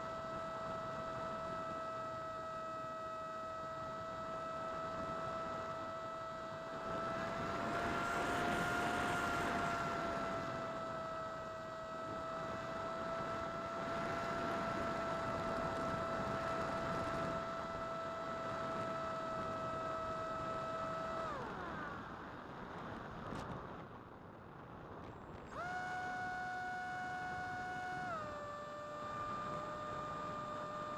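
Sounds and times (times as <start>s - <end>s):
electric motor and propeller whine: 0.0s - 30.9s.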